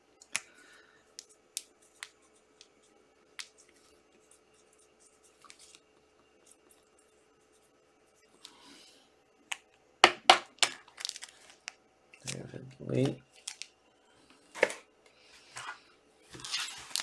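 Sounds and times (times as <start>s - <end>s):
cards rustling: 10.5s - 13.7s, 15.6s - 17.0s.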